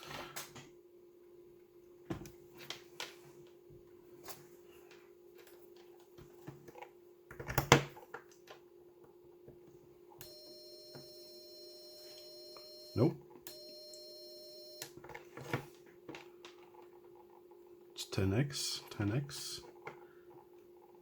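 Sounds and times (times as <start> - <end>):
steady electronic hum: 10.1 - 15.7.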